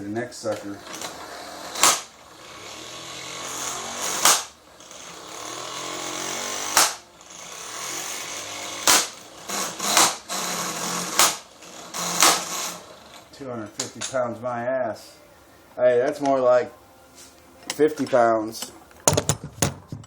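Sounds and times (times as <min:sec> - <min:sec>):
impact wrench motor whirring: 0:00.9 - 0:13.3.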